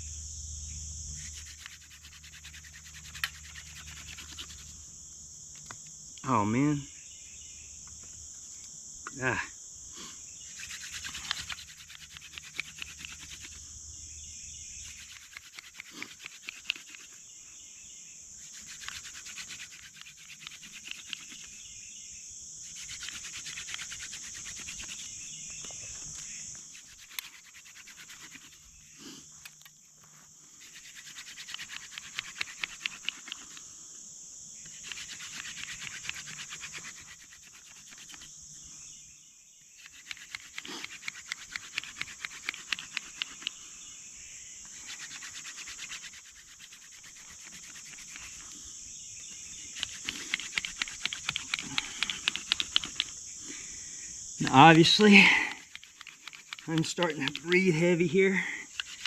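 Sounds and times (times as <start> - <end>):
high insect drone: 0.0 - 59.0.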